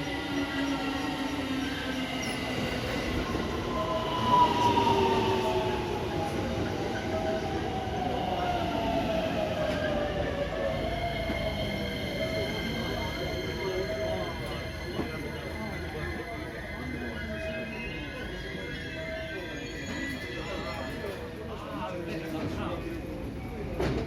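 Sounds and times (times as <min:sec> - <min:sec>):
train wheels rumbling on rail: 0:22.0 - 0:24.0.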